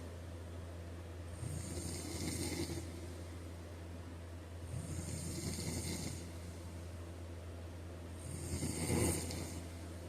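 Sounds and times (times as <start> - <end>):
steady low hum: 0.0 - 10.0
man snoring: 1.4 - 3.0, 4.7 - 6.3, 8.2 - 9.7.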